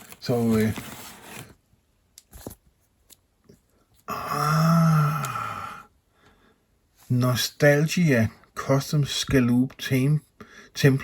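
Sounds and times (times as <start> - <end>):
man's wordless hum: 4.1 - 5.9.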